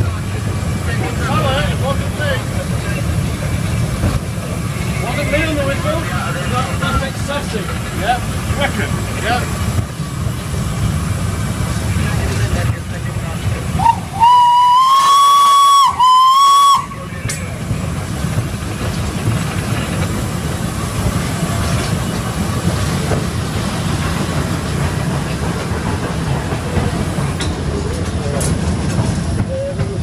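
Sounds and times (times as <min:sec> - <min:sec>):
steam locomotive rumble and hiss: 0:00.0 - 0:30.0
steam whistle blasts: 0:13.8 - 0:16.9.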